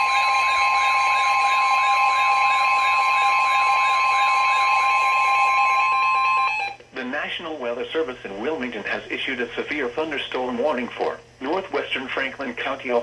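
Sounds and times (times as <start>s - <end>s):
two steady alert tones: 0.0s - 6.8s.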